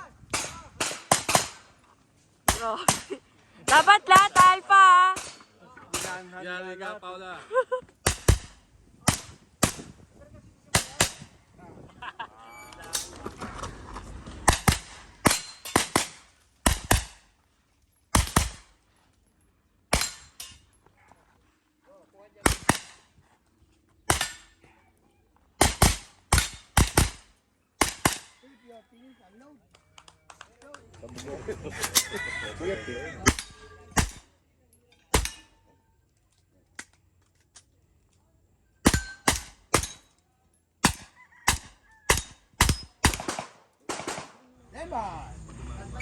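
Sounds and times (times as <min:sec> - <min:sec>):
gunshots: 0:00.3 - 0:01.7, 0:02.5 - 0:06.2, 0:08.0 - 0:10.0, 0:10.7 - 0:11.3, 0:14.4 - 0:17.2, 0:18.1 - 0:18.8, 0:22.4 - 0:23.1, 0:24.1 - 0:24.5, 0:25.6 - 0:28.4, 0:33.2 - 0:34.3, 0:38.8 - 0:40.1, 0:40.8 - 0:44.5.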